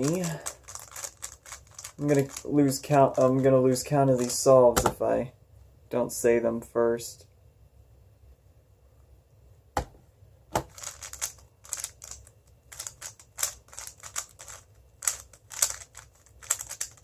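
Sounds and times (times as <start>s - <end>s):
puzzle cube layers clacking: 0.0s - 5.1s, 10.6s - 17.0s.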